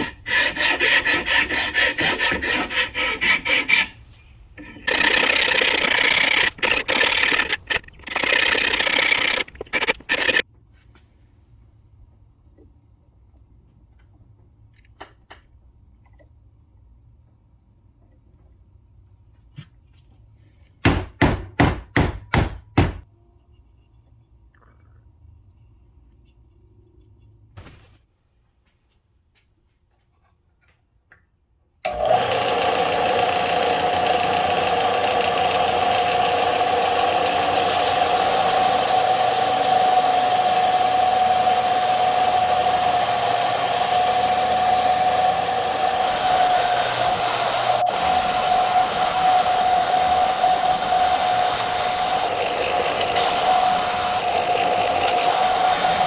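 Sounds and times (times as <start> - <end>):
power tool humming: 4.6 - 10.4, 31.9 - 56.0.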